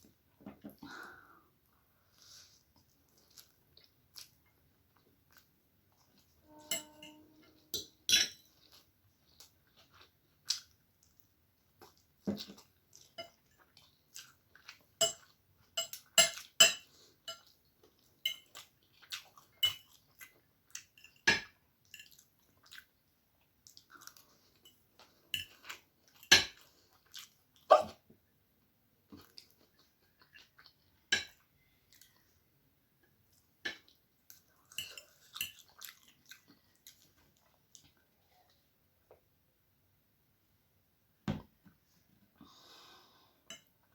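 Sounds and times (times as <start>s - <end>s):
chewing noodles: 2.1s - 6.4s, 8.5s - 21.1s, 21.9s - 27.7s, 29.1s - 32.4s, 33.3s - 38.7s.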